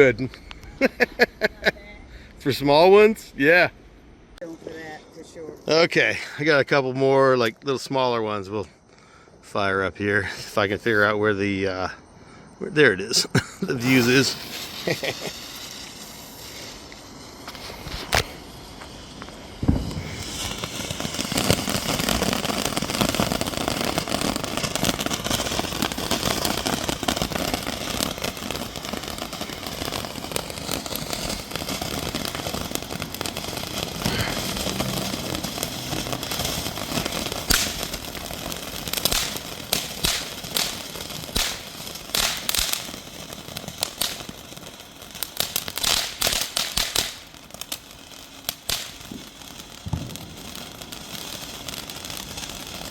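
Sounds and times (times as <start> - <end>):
firework fountain hissing: 0.0 - 3.7, 4.3 - 7.3, 10.2 - 52.9
firework crackling pops: 13.4 - 52.9.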